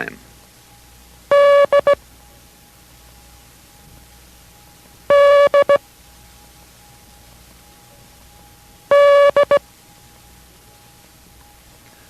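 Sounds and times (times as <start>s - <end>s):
morse code tone: 1.3s - 2.0s, 5.1s - 5.8s, 8.9s - 9.6s.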